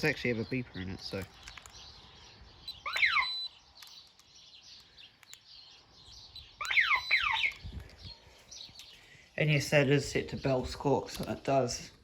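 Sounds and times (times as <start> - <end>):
security alarm chirps: 2.6 - 4.0, 6.6 - 7.6.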